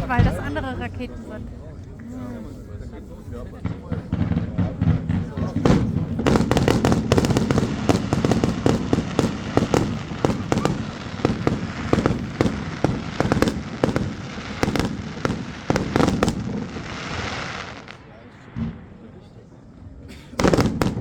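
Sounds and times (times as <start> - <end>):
fireworks crackle: 3.5 - 19.0, 20.4 - 21.0
firecracker and rocket bangs: 3.6 - 19.1, 20.4 - 21.0.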